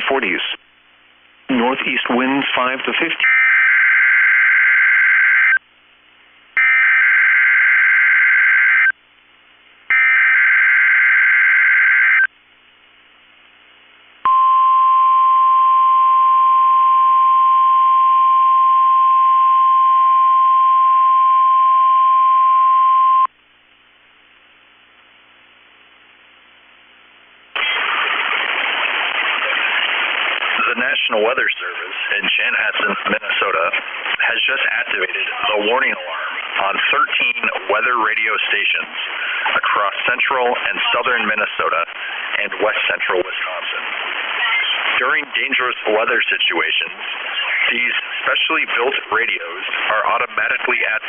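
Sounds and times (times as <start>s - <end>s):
loud static hiss: 0.0s - 4.0s, 23.3s - 51.0s
steady warning alarm tone: 6.6s - 8.9s, 9.9s - 12.3s.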